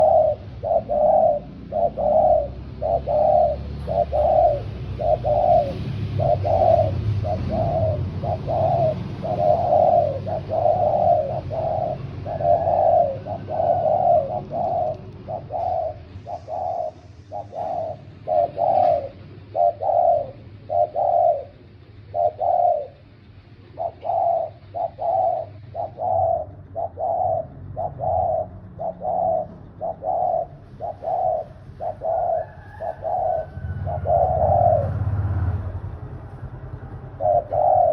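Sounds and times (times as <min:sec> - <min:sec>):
doves cooing: 0:00.0 - 0:37.9.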